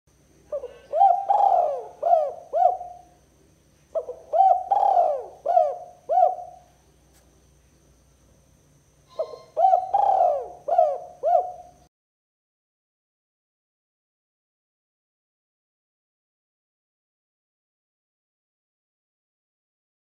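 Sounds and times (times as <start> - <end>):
dove cooing: 0.5 - 3.2, 4.0 - 6.7, 9.1 - 11.9.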